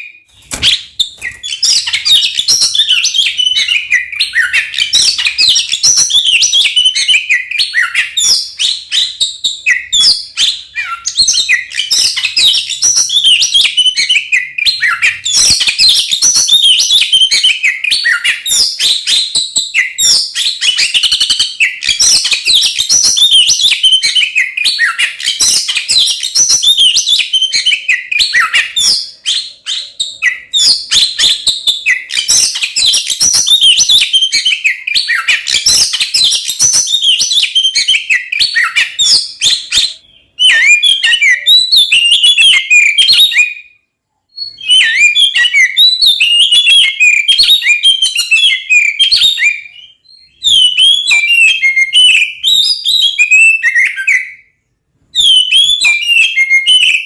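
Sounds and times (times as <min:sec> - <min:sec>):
magpie-robin singing: 0:00.0 - 0:57.0.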